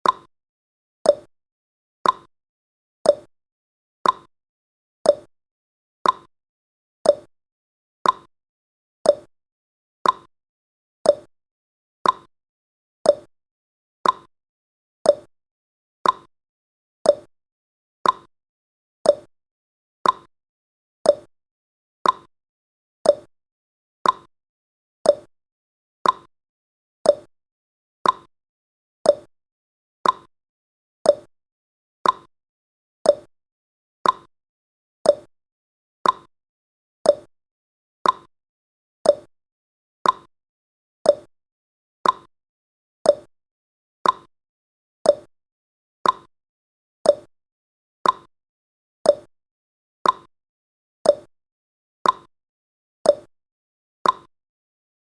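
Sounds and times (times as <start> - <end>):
timer ticking: 0.0 - 0.3, 1.1 - 1.3, 2.0 - 2.3, 3.1 - 3.3, 4.0 - 4.3, 5.1 - 5.3, 6.0 - 6.3, 7.1 - 7.3, 8.0 - 8.3, 9.1 - 9.3, 10.0 - 10.3, 11.1 - 11.3, 12.0 - 12.3, 13.1 - 13.3, 14.0 - 14.3, 15.1 - 15.3, 16.0 - 16.3, 17.1 - 17.3, 18.0 - 18.3, 19.1 - 19.3, 20.0 - 20.3, 21.0 - 21.3, 22.0 - 22.3, 23.0 - 23.3, 24.0 - 24.3, 25.1 - 25.3, 26.0 - 26.3, 27.0 - 27.3, 28.0 - 28.3, 29.0 - 29.3, 30.0 - 30.3, 31.1 - 31.3, 32.0 - 32.3, 33.1 - 33.3, 34.0 - 34.3, 35.1 - 35.3, 36.0 - 36.3, 37.0 - 37.3, 38.0 - 38.3, 39.0 - 39.3, 40.0 - 40.3, 41.1 - 41.3, 42.0 - 42.3, 43.1 - 43.3, 44.0 - 44.3, 45.1 - 45.3, 46.0 - 46.3, 47.1 - 47.3, 48.0 - 48.3, 49.1 - 49.3, 50.0 - 50.3, 51.1 - 51.3, 52.0 - 52.3, 53.1 - 53.3, 54.0 - 54.3.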